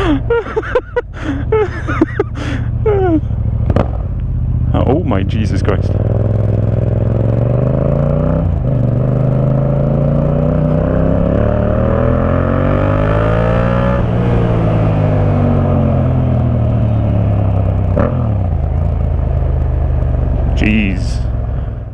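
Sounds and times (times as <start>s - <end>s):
motorcycle engine accelerating: 1.0s - 21.9s
exhaust crack: 3.5s - 10.3s, 14.1s - 21.9s.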